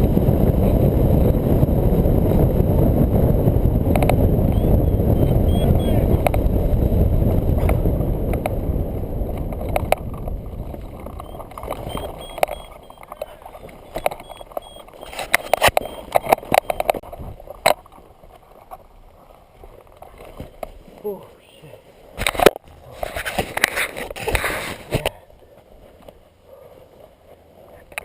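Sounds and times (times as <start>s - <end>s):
wind rushing over microphone: 0.0s - 18.0s
sharp clicks and knocks: 9.3s - 18.0s.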